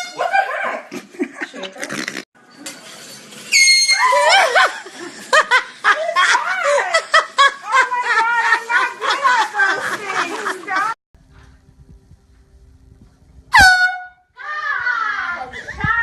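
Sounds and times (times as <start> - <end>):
high-pitched laughter: 4.0 - 11.0
air horn blast: 13.5 - 14.3.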